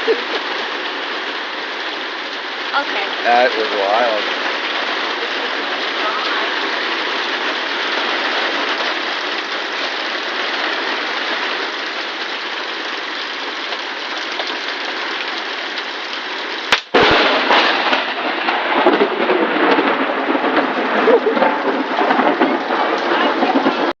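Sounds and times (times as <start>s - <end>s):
sharp thunder crack: 0.0s - 9.7s, 16.7s - 23.9s
heavy rain falling: 0.0s - 24.0s
rough thunder: 16.9s - 23.9s.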